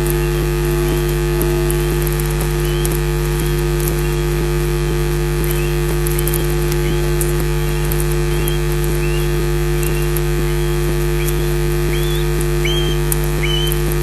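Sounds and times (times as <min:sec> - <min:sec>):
bird whistled calls: 0:00.0 - 0:04.2, 0:05.4 - 0:06.0, 0:06.8 - 0:13.9
electrical hum and hiss: 0:00.0 - 0:14.0.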